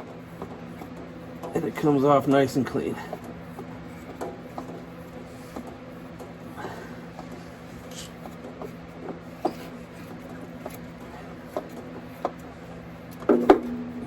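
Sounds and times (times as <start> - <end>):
steady hum: 0.0 - 14.0.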